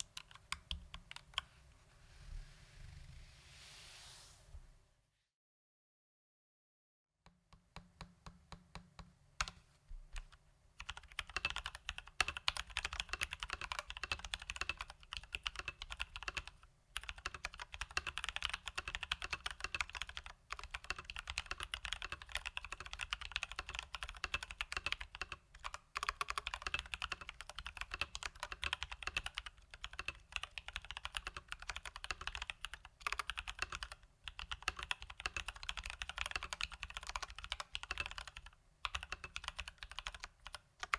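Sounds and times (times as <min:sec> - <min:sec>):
mechanical keyboard typing: 0:10.2 - 0:40.9.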